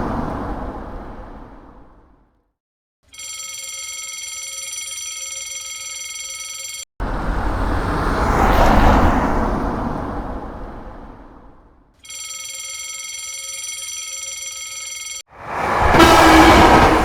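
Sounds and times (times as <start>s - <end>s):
train rushing past: 0.0s - 2.1s, 7.0s - 11.8s, 15.3s - 17.0s
level crossing warning bell: 3.1s - 6.9s, 12.0s - 15.3s.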